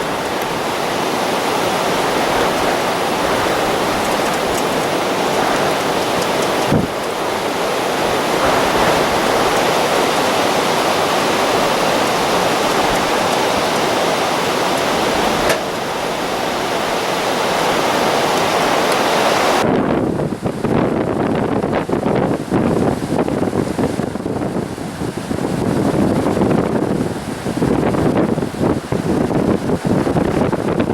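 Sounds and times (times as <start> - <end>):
waves breaking on shore: 0.0 - 20.6
gusty wind: 0.0 - 30.9.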